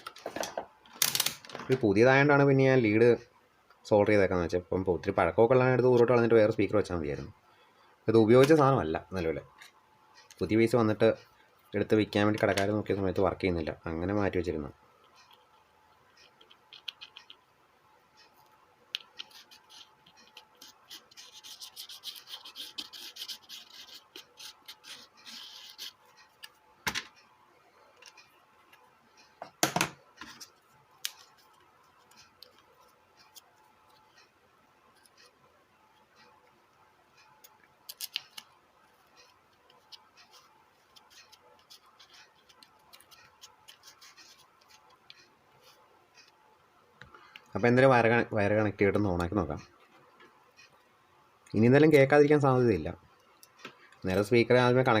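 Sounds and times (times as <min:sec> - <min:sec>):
rubbing and scraping: 0:19.0 - 0:26.5.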